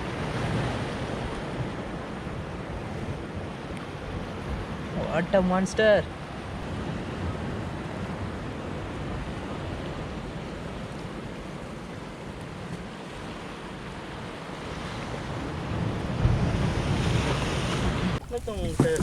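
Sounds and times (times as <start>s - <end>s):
waves washing on rocky shore: 6.1s - 19.0s
wind buffeting microphone: 15.6s - 19.0s.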